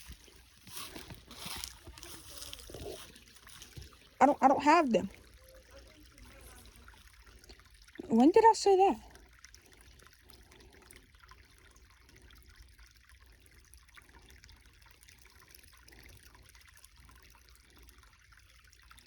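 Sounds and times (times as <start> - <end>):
creek water trickling over stones: 0.0 - 19.0.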